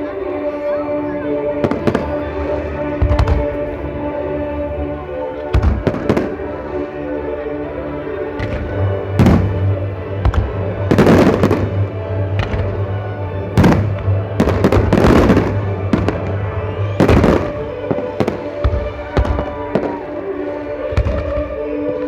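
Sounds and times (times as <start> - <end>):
fireworks banging and crackling: 1.6 - 3.8, 5.4 - 6.6, 8.3 - 22.0.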